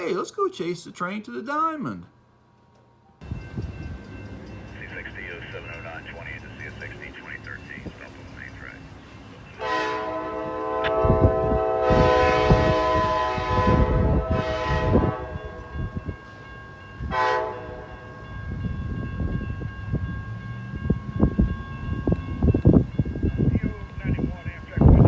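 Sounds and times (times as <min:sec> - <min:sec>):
train air horn blasts: 0:09.6 - 0:15.8, 0:17.1 - 0:17.9.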